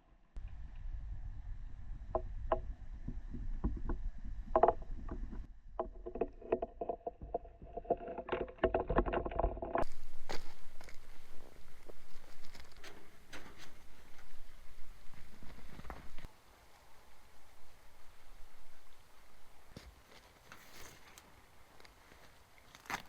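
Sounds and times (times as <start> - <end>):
low rumble: 0.0 - 16.3
knocks and clicks: 2.1 - 9.9.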